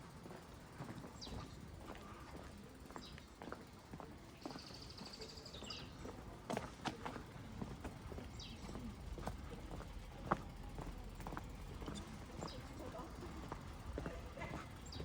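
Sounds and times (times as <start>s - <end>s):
birds chirping: 14.4s - 15.0s.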